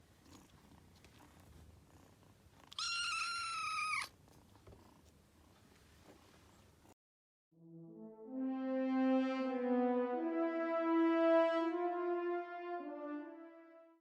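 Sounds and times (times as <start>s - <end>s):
kitten meowing: 2.7s - 4.1s.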